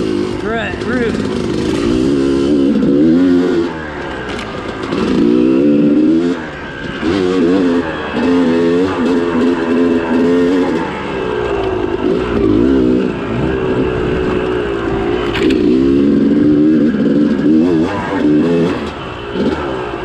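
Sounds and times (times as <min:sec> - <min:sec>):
dirt bike engine revving: 0:00.0 - 0:20.0.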